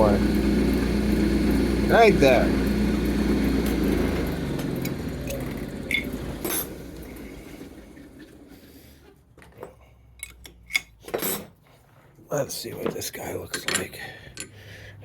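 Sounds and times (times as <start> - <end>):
machine motor winding down: 0.0 - 8.9.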